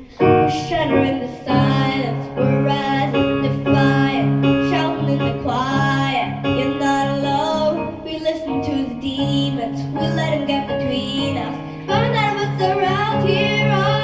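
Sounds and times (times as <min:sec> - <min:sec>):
girl singing: 0:00.0 - 0:14.0
pop backing track: 0:00.0 - 0:14.0.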